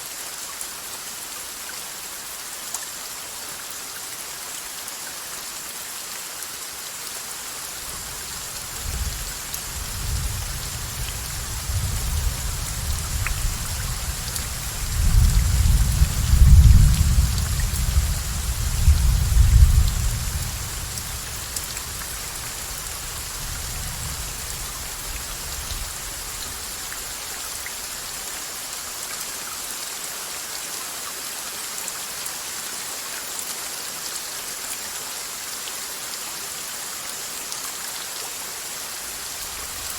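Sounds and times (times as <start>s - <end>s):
heavy rain: 0.0s - 39.9s
thunder rumble: 8.2s - 22.5s.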